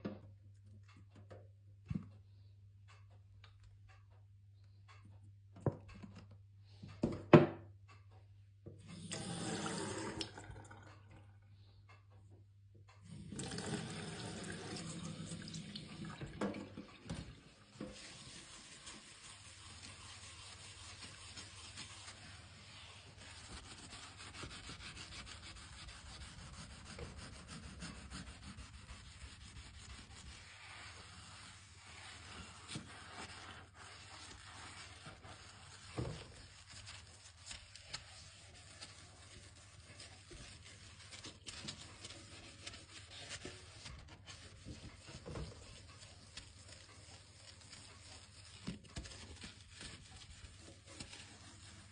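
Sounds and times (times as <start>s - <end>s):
knock: 7.0s - 7.7s
scrubbing a surface: 13.3s - 51.9s.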